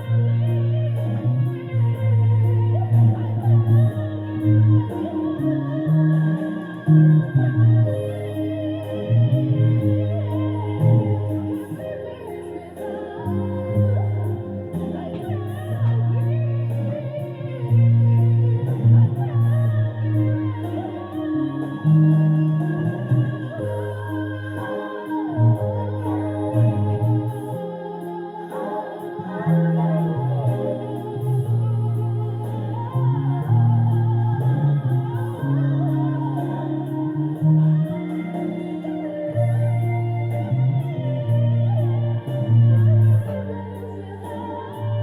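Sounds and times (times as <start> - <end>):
backing music track: 0.0 - 45.0
bass guitar low notes: 0.0 - 45.0
person singing melody: 0.0 - 45.0.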